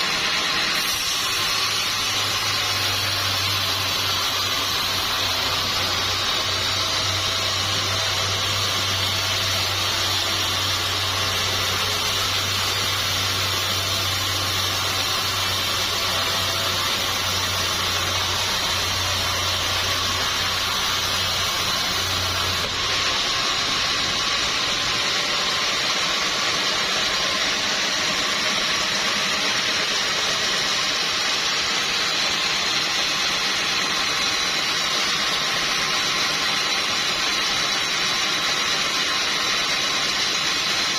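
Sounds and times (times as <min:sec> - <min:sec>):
sawmill machinery running: 0:00.0 - 0:40.9.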